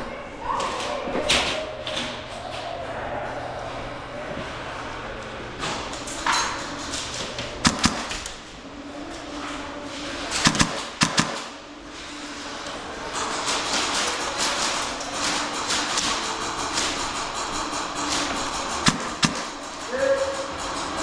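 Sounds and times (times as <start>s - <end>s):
airsoft gun shots: 7.6s - 8.3s, 10.4s - 11.6s, 18.8s - 19.6s.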